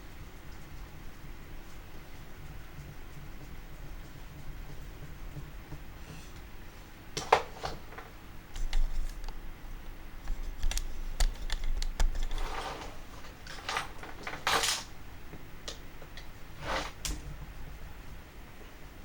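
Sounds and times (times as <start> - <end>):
light clicks of parts: 10.2 - 12.4
short scrapes: 12.3 - 13.2, 16.6 - 17.1.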